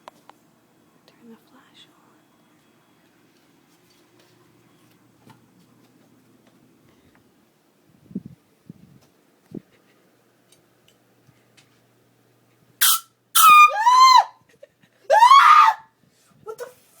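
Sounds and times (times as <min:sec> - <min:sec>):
woman screaming: 0:13.4 - 0:14.4, 0:15.1 - 0:15.9.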